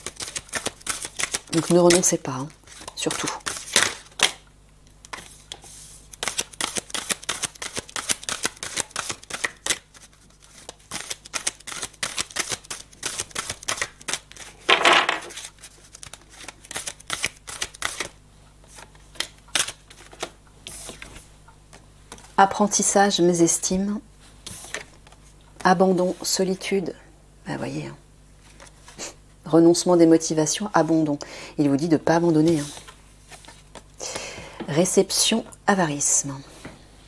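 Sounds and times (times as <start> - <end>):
cards being shuffled: 0.0 - 4.4, 5.0 - 22.4, 28.4 - 29.0.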